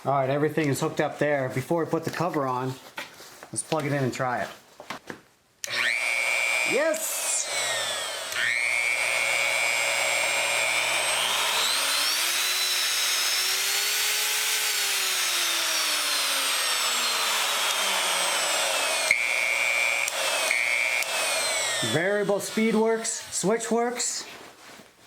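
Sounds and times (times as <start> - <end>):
electric router motor whining: 5.6 - 23.4.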